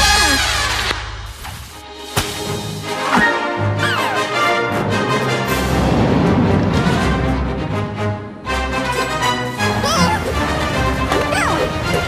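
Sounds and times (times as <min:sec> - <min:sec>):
cartoon music: 0:03.1 - 0:04.6, 0:09.0 - 0:12.0.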